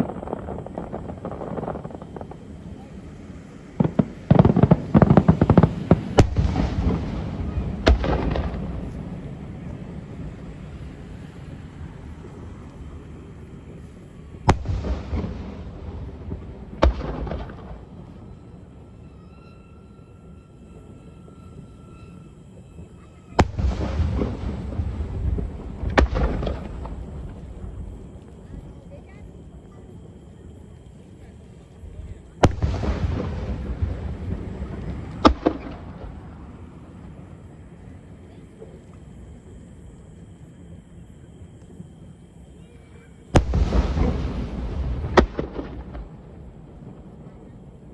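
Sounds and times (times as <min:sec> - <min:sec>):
loud firework bangs: 0:00.0 - 0:12.2, 0:12.8 - 0:18.7, 0:21.3 - 0:29.3, 0:32.2 - 0:39.6, 0:43.2 - 0:47.6
fireworks cracking: 0:00.0 - 0:19.1, 0:20.3 - 0:47.9
firework crackle: 0:00.0 - 0:47.9
long rolling rumble: 0:00.0 - 0:47.9.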